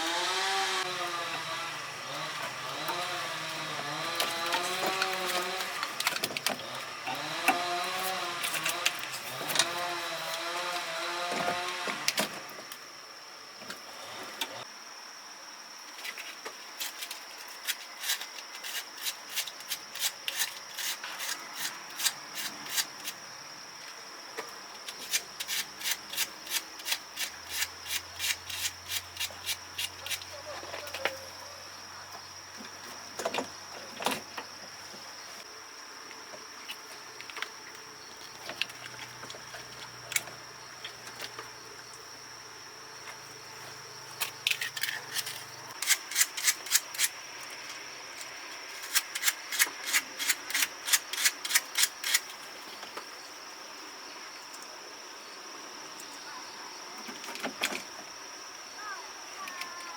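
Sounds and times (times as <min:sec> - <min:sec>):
high insect chirring: 0:16.0 - 0:59.9.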